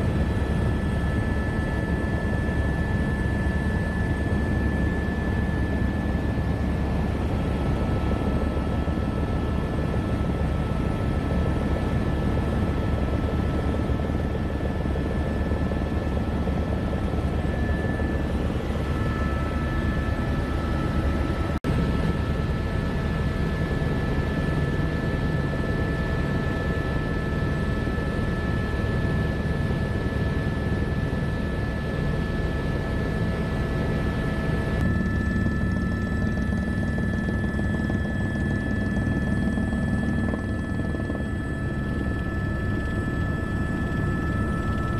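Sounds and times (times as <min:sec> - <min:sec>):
helicopter rotor and engine drone: 0:00.0 - 0:44.9
high-pitched whines: 0:34.8 - 0:44.9.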